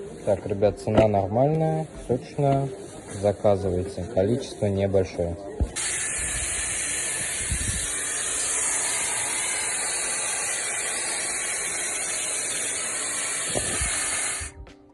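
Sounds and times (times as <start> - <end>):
loud steady hiss: 5.8 - 14.6.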